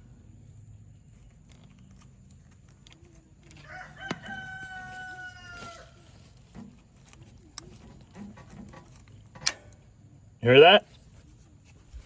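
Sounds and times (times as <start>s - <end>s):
rooster crowing: 3.6s - 6.0s.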